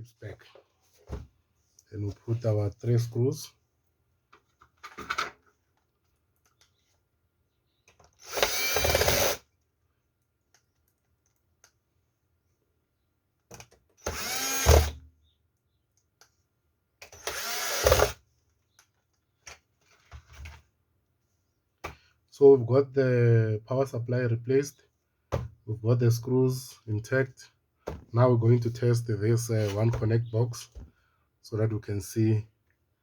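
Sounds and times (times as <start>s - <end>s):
power screwdriver motor whirring: 8.2s - 9.4s, 14.0s - 15.0s, 17.1s - 18.2s.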